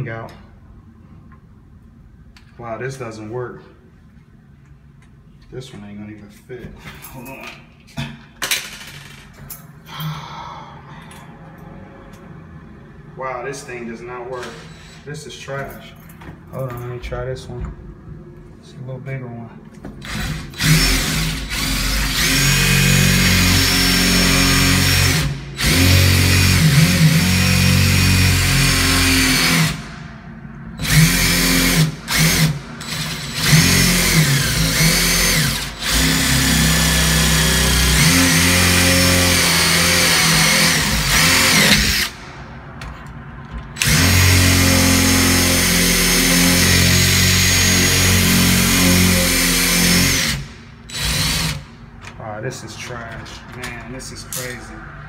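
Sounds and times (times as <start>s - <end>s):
power drill spinning: 20.0s - 29.9s, 30.8s - 42.2s, 43.8s - 51.7s.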